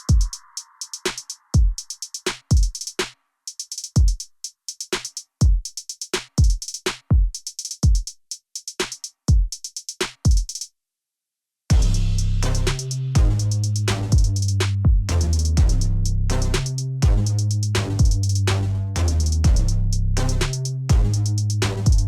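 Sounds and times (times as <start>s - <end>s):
hi-hat ticks: 0.0s - 10.7s, 12.6s - 22.0s
deep kick drums: 1.6s - 1.8s, 6.4s - 8.0s, 9.3s - 9.5s, 11.7s - 22.0s.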